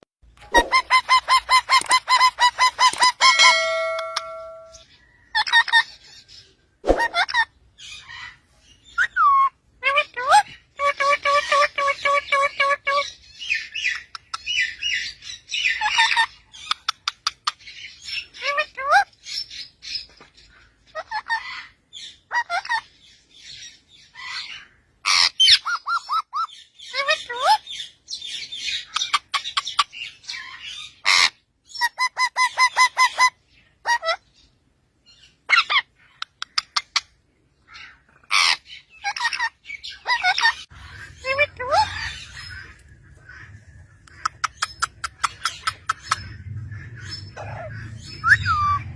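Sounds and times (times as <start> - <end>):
parrot chirping and squawking: 0.4 - 20.0, 20.6 - 34.6, 35.2 - 48.9
parrot whistling and chirping: 0.5 - 4.8, 8.8 - 17.6, 44.1 - 48.9.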